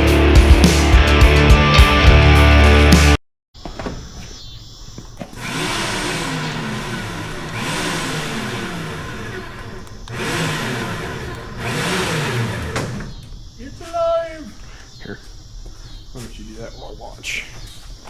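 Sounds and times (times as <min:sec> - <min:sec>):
power tool motor running: 0:05.2 - 0:13.8.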